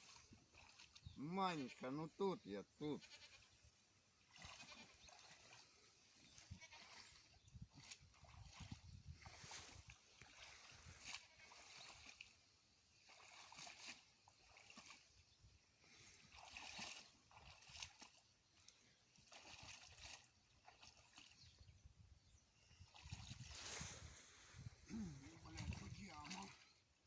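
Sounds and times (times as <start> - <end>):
water sloshing and splashing: 0.0 - 2.0, 4.2 - 21.7, 22.7 - 27.0.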